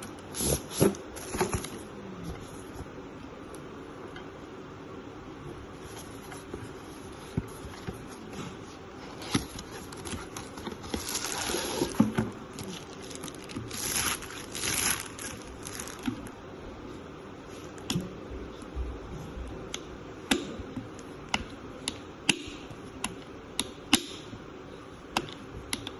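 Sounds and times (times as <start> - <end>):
packaging rustling: 9.2 - 16.3.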